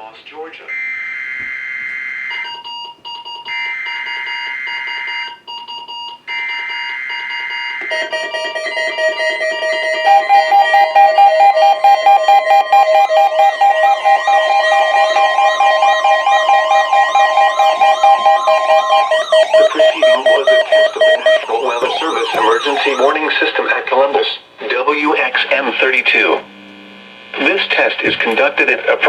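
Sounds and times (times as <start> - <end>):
receiver alarms beeping: 0.6 - 26.7
steady alert tone: 7.8 - 24.1
screeching data bursts: 7.8 - 29.0.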